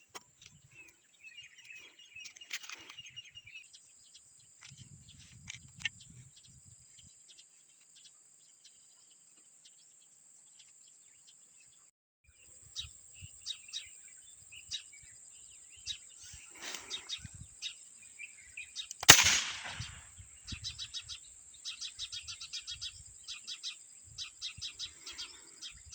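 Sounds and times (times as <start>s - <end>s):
birds chirping: 13.5s - 25.9s
sharp snap: 19.0s - 20.0s.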